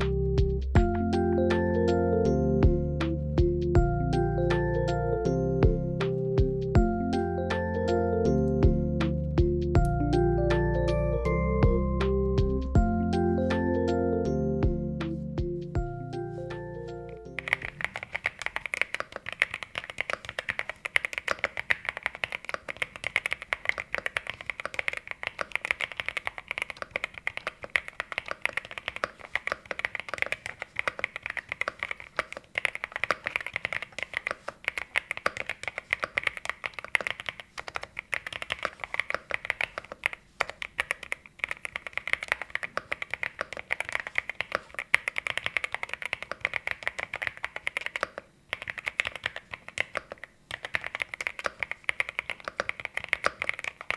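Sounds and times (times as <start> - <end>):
fast typing on mechanical keyboard: 17.4 - 53.9.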